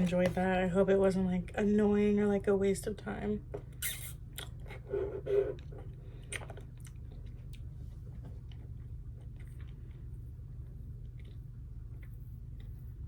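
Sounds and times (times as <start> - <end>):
small mouth clicks: 3.8 - 4.6
person chewing with mouth smacks: 3.8 - 12.8.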